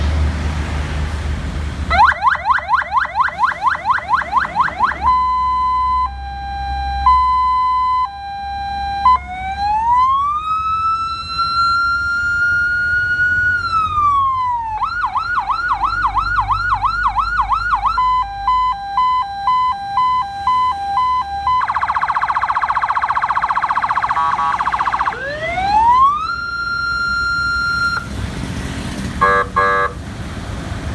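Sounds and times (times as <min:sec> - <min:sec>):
electronic police siren: 0:01.9 - 0:28.2, 0:29.2 - 0:29.9.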